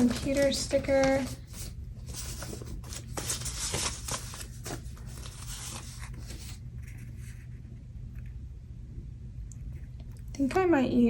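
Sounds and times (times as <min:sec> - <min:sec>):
paper crinkling and rustling: 0:00.0 - 0:07.5.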